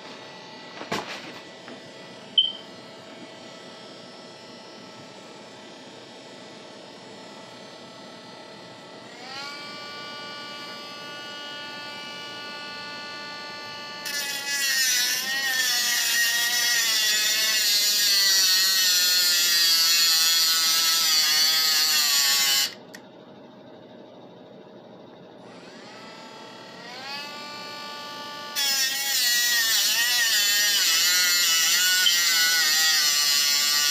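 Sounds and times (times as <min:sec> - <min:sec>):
saw motor whining: 0:09.1 - 0:23.0, 0:25.5 - 0:33.9
saw blade cutting metal: 0:14.0 - 0:22.8, 0:28.5 - 0:33.9.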